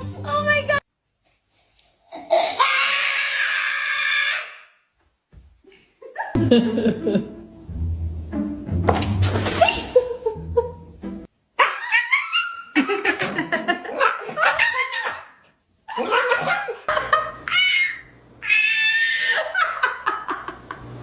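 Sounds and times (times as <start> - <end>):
pet animal wavering cries: 11.6 - 12.7, 14.0 - 15.3, 17.5 - 19.3.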